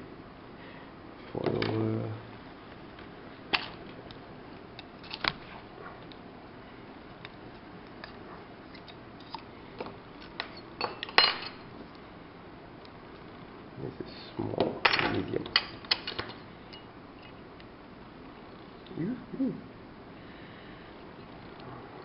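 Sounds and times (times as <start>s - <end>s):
metal clicks of lock parts: 15.5s - 16.4s.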